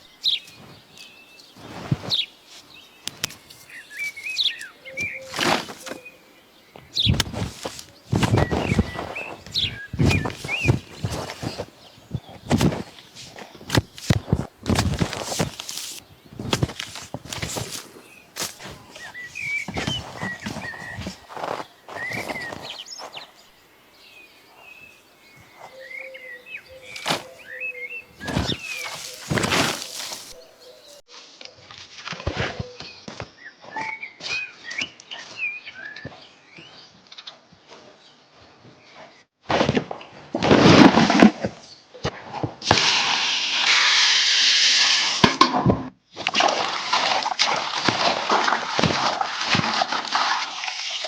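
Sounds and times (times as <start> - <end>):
small birds chirping: 0.0 - 31.0
scuffing noises: 0.2 - 23.4, 24.5 - 31.0
soft thumps: 1.6 - 6.1, 6.8 - 23.2, 26.7 - 31.0.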